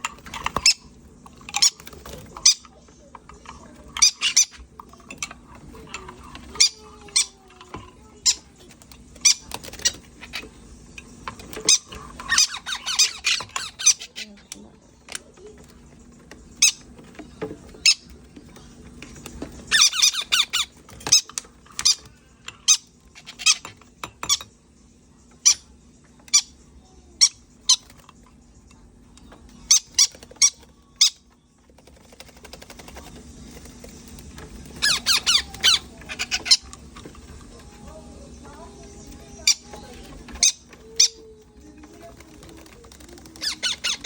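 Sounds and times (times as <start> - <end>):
parrot chick squeaking: 0.3 - 2.8, 3.8 - 10.6, 11.4 - 14.5, 16.5 - 17.2, 17.8 - 18.2, 19.6 - 24.5, 25.4 - 28.0, 29.6 - 37.9, 38.5 - 44.0.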